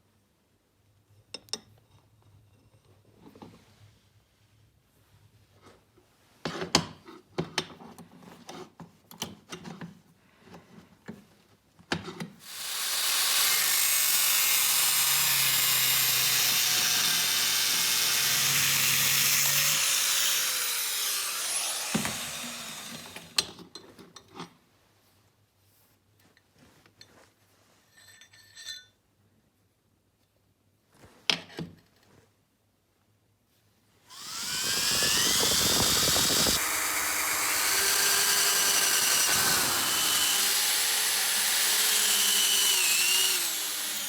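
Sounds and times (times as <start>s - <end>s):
power tool cutting steel: 12.4s - 23.5s, 34.1s - 44.0s.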